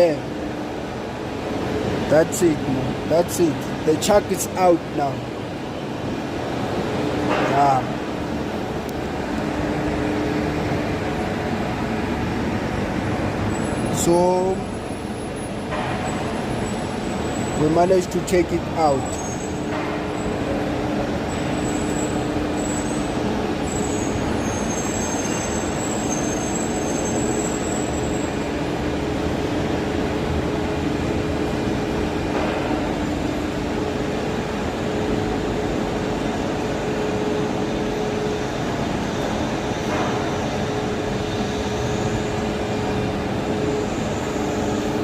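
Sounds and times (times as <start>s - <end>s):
mechanical hum: 0.0s - 45.0s.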